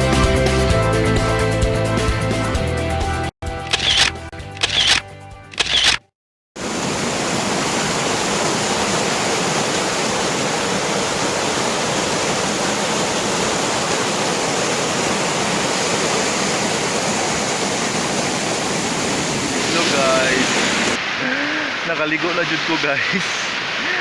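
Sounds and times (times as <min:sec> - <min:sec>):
waterfall rushing: 0:06.6 - 0:24.0.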